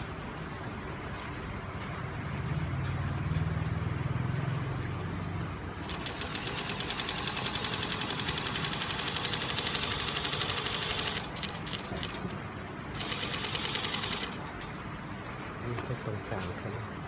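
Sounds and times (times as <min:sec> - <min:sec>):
sewing machine hum: 0:05.8 - 0:14.5.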